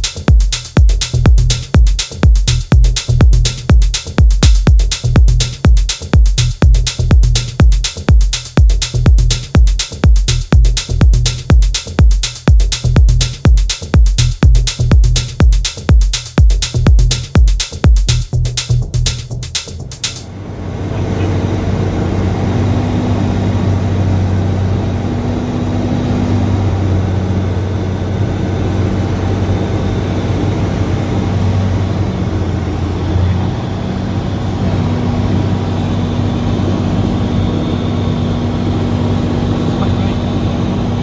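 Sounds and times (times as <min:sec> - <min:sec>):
propeller aircraft engine drone: 0:20.2 - 0:41.0.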